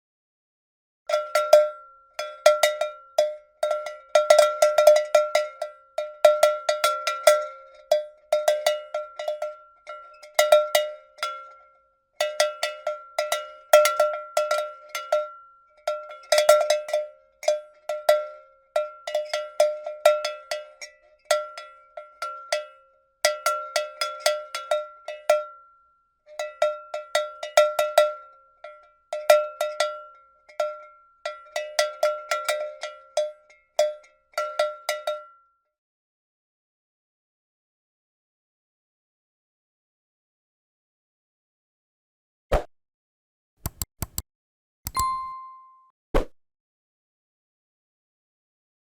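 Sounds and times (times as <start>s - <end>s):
metal cow bell clanking: 1.1s - 35.6s, 45.0s - 45.8s.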